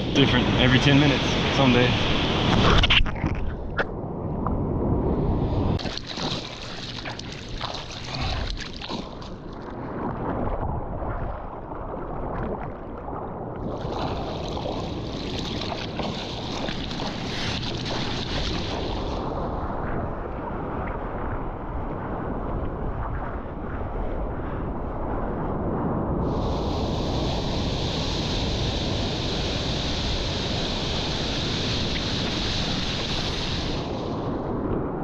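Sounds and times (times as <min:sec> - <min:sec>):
low wind rumble: 0:00.0 - 0:35.0
water splashing against microphone: 0:05.8 - 0:19.5
hissing rush of surf: 0:26.3 - 0:34.4.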